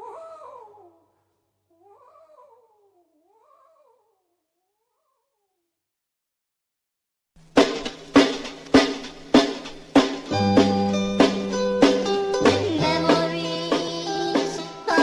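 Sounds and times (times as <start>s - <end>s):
drum kit playing: 7.4s - 15.0s.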